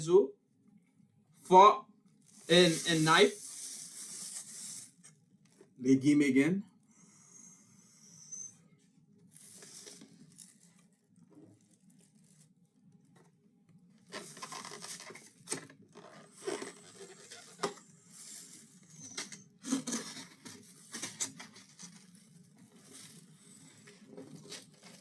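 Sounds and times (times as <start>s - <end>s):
plastic packaging rustling and tearing: 2.3s - 5.0s, 9.4s - 12.5s, 14.0s - 25.0s.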